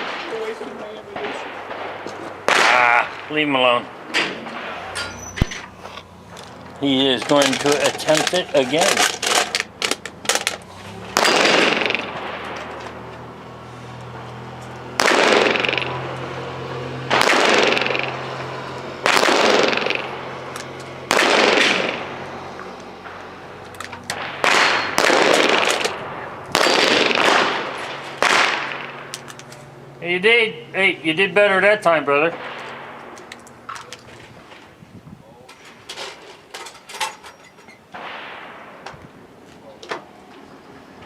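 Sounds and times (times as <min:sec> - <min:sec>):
gunshots with echo: 0:00.0 - 0:05.6, 0:10.9 - 0:13.1, 0:14.8 - 0:29.2, 0:32.3 - 0:33.2, 0:37.9 - 0:38.8.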